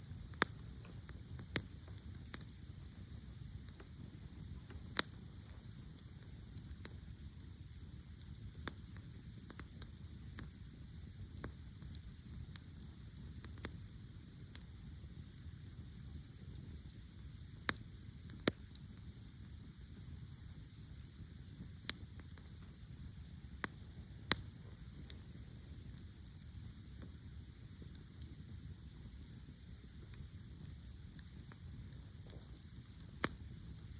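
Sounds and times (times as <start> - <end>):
crickets chirring: 0.0 - 33.9
campfire crackling and popping: 0.1 - 7.0, 8.6 - 10.6, 17.6 - 18.9, 23.4 - 26.1, 30.0 - 33.6.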